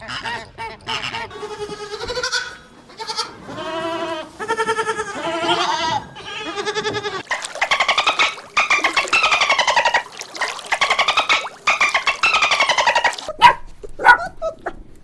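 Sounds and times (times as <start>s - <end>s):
animal bleating: 1.4s - 7.3s.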